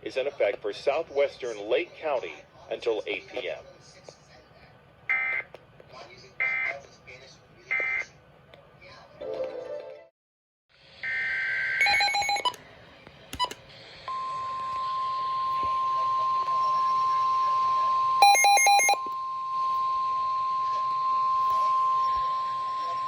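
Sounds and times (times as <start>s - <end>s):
steady warning alarm tone: 6.4s - 6.8s, 14.1s - 23.0s.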